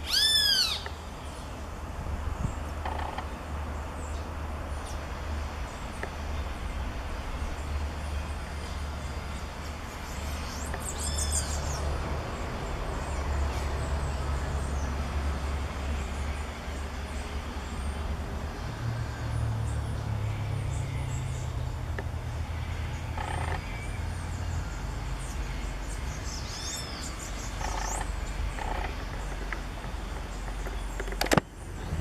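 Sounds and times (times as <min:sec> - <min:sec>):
bird call rising then falling: 0:00.0 - 0:01.0
steady low rumble: 0:21.4 - 0:32.0.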